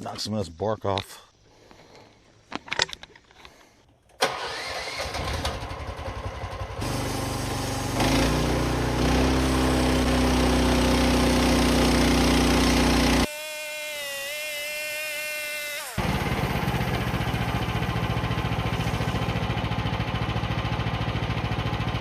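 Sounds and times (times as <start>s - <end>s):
sawmill engine cranking and starting: 4.1s - 13.3s, 15.8s - 22.0s.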